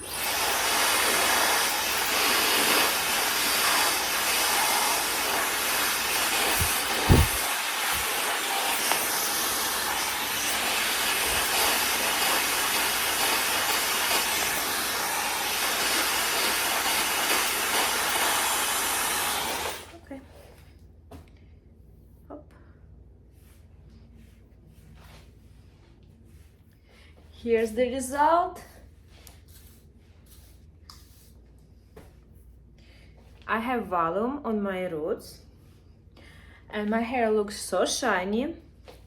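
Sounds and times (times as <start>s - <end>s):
hair dryer blowing: 0.0s - 20.0s.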